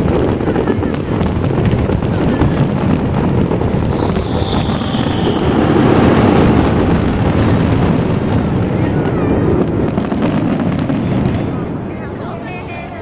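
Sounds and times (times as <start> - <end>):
fireworks bursts rumbling: 0.0 - 13.0
fireworks crackling: 0.0 - 13.0
high firework whistle: 3.5 - 13.0.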